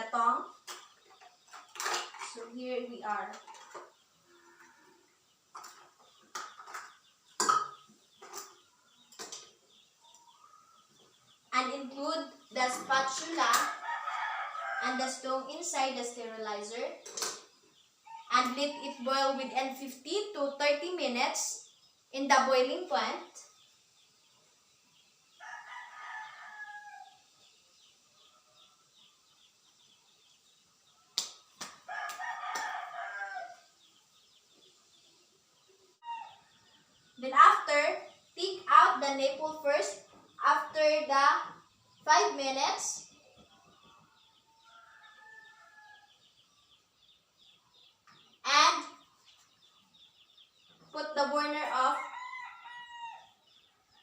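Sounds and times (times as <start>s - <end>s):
rooster crowing: 13.6s - 15.0s, 25.4s - 27.2s, 31.9s - 33.7s, 44.5s - 46.2s, 51.8s - 53.4s
faint high chirping: 20.7s - 39.4s.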